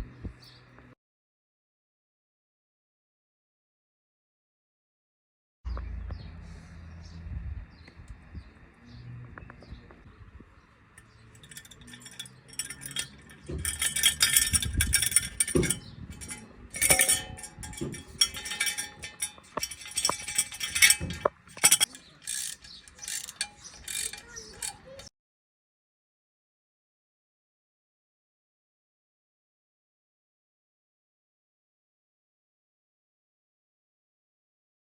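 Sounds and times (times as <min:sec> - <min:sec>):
metal chimes tinkling: 0:11.0 - 0:25.1.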